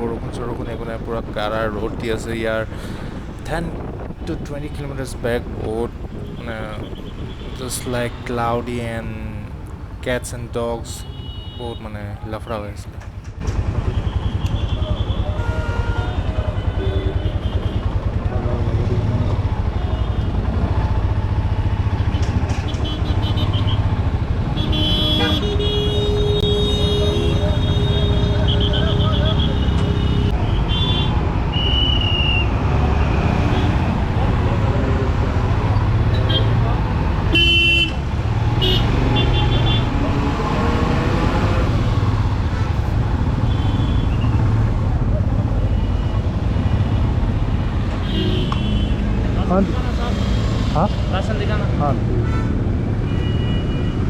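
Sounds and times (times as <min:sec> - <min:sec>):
motorcycle road rumble: 0:00.0 - 0:54.0
vehicle horns honking: 0:06.1 - 0:09.0, 0:10.1 - 0:13.0, 0:14.0 - 0:18.0, 0:22.1 - 0:34.0, 0:36.1 - 0:41.8, 0:42.5 - 0:44.4, 0:47.8 - 0:51.1, 0:52.2 - 0:54.0.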